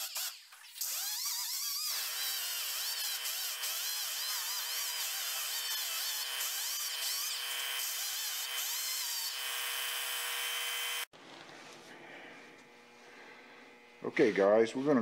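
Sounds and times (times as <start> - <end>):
electric grinder on steel: 0.0 - 11.1.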